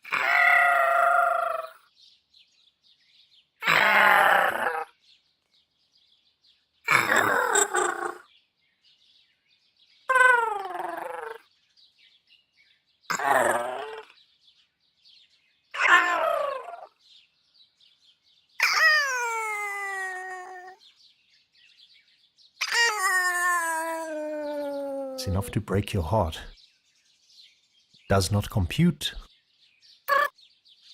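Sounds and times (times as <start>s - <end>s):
synthesized robot whimpering calls: 23.6s - 25.8s.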